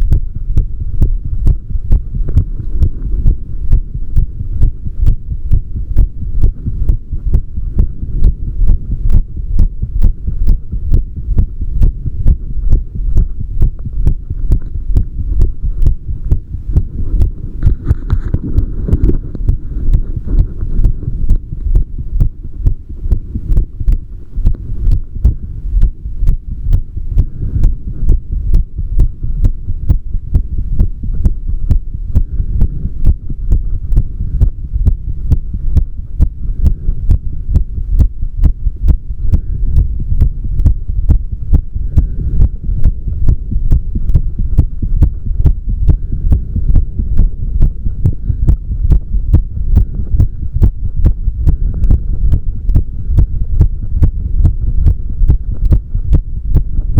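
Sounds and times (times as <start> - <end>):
heartbeat thumping: 0.0 - 56.9
low hum: 0.0 - 56.9.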